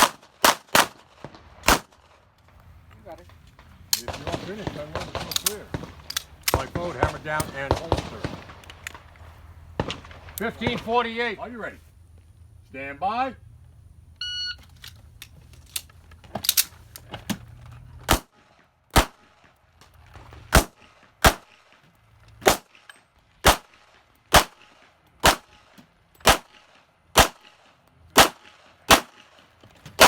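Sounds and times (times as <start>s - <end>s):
pistol shots: 0.0s - 2.0s, 4.0s - 8.8s, 9.8s - 10.9s, 18.1s - 19.3s, 20.5s - 21.7s, 22.4s - 22.8s, 23.4s - 27.6s, 28.2s - 29.4s.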